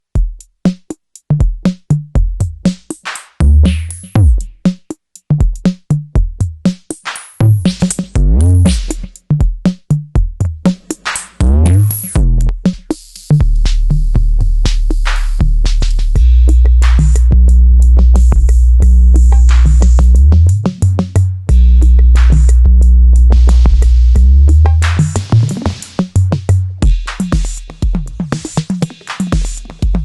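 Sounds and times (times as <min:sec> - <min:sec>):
kick drum: 0:00.0 - 0:02.8, 0:03.4 - 0:04.7, 0:05.3 - 0:06.8, 0:07.4 - 0:10.7, 0:11.4 - 0:14.8, 0:15.4 - 0:16.5, 0:17.4 - 0:21.9, 0:22.7 - 0:25.2, 0:26.1 - 0:28.7, 0:29.3 - 0:30.0
hi-hat clicks: 0:00.0 - 0:09.4, 0:10.4 - 0:30.0
bass notes: 0:03.4 - 0:04.5, 0:07.5 - 0:09.0, 0:11.4 - 0:27.0
sustained low bass tone with hiss: 0:13.4 - 0:25.8.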